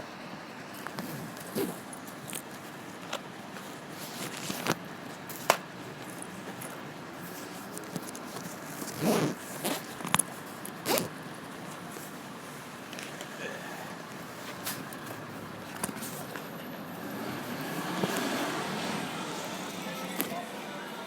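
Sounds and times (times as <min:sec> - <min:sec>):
bag being rummaged: 0:05.3 - 0:11.2
zipper rasps: 0:08.6 - 0:10.1, 0:10.8 - 0:11.2.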